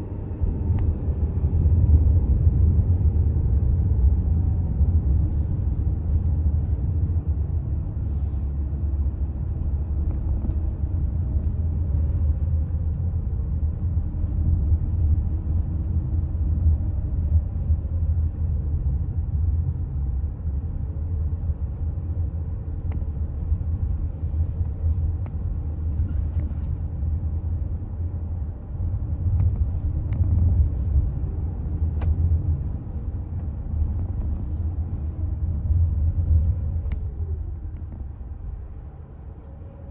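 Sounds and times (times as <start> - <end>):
vehicle road rumble: 0.0 - 39.9.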